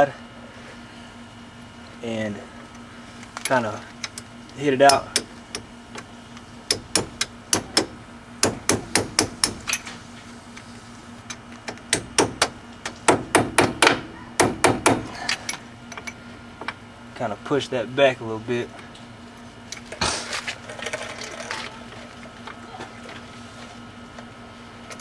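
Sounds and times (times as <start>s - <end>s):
hammer striking metal punch: 6.7s - 9.7s.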